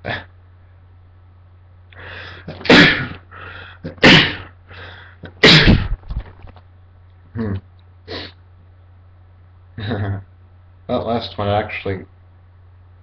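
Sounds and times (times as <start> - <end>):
man sneezing: 2.5 - 3.2, 3.8 - 4.5, 5.3 - 6.0.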